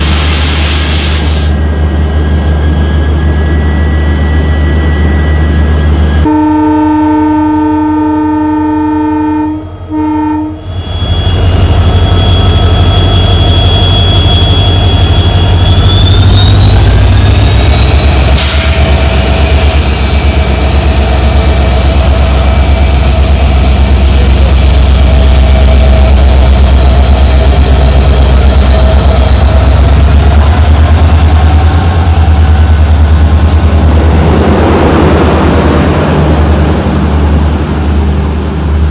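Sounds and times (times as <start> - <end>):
locomotive engine humming: 0.9 - 38.9
multi-note train horn: 6.2 - 10.8.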